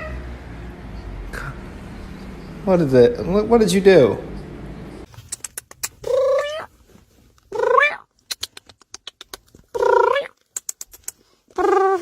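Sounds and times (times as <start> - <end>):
cat yowling: 6.1 - 6.7.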